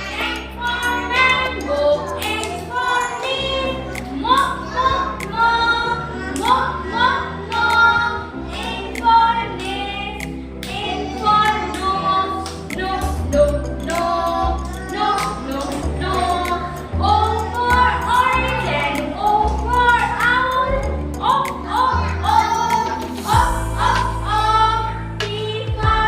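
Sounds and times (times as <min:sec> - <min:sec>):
voices singing: 0:00.0 - 0:26.0
backing track with bass line: 0:12.7 - 0:26.0.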